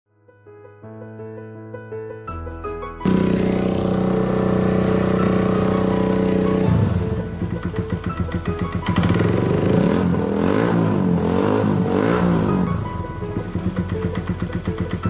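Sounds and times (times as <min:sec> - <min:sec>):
motorcycle engine revving: 0:03.0 - 0:15.0.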